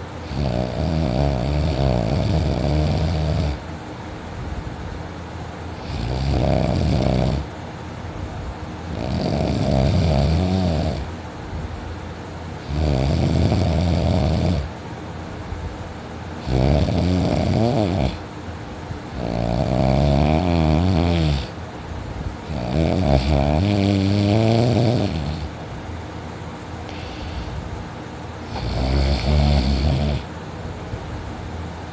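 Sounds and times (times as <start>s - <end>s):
person snoring loudly: 0.2s - 3.6s, 5.8s - 7.5s, 8.9s - 11.1s, 12.6s - 14.7s, 16.4s - 18.2s, 19.2s - 21.6s, 22.5s - 25.5s, 28.5s - 30.3s.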